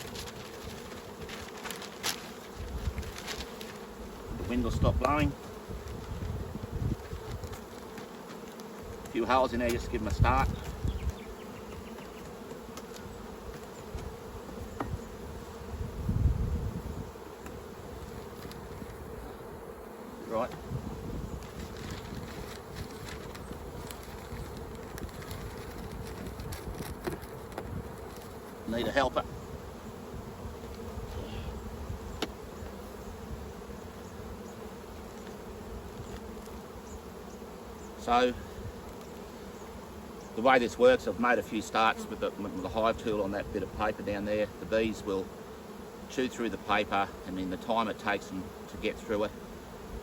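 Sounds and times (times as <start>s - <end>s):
bees buzzing: 0.0s - 50.0s.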